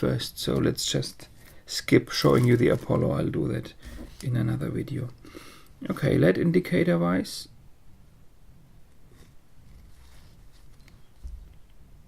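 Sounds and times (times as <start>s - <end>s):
pencil handling noise: 2.2s - 3.1s, 3.8s - 4.3s
soft plastic scrape: 2.2s - 3.1s, 3.8s - 4.4s, 8.9s - 11.3s.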